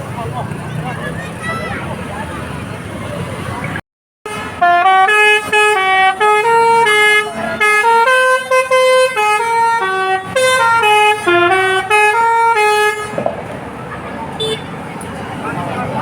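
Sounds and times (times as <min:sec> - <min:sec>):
multi-tone air horn tune: 0:04.2 - 0:13.2.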